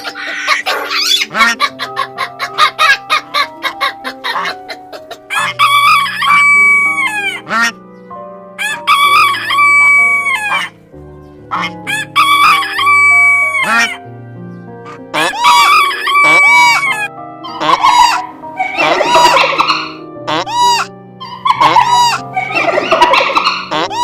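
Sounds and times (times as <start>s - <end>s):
background music: 0.0s - 24.0s
rooster crowing: 5.3s - 7.3s, 8.6s - 10.7s, 11.9s - 13.7s.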